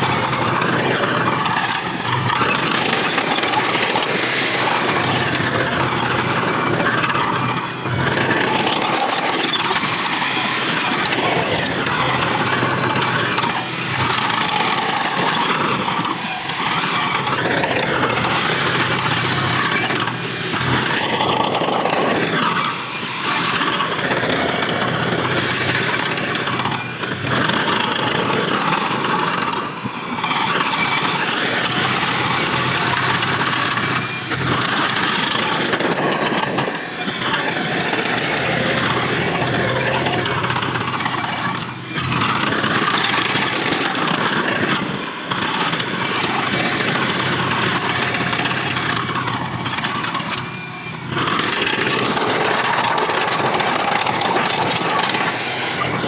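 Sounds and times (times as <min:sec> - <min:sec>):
heavy machinery diesel engines: 0:00.0 - 0:56.0.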